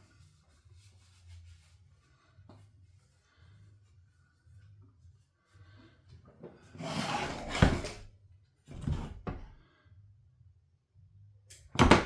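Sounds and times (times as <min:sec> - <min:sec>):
tool scraping on workbench: 0:06.8 - 0:08.1, 0:08.7 - 0:09.5.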